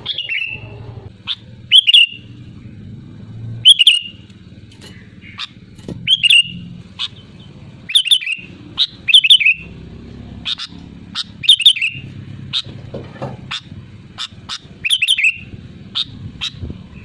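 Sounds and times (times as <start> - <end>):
bird singing sharp whistled notes: 1.3 - 2.3, 3.6 - 4.2, 6.1 - 6.7, 7.9 - 9.7.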